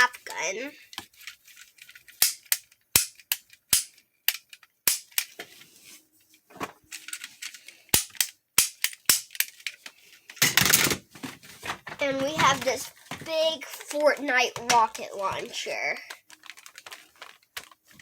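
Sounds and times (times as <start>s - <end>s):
toy cap gun snaps: 2.2s - 5.3s, 7.9s - 9.5s.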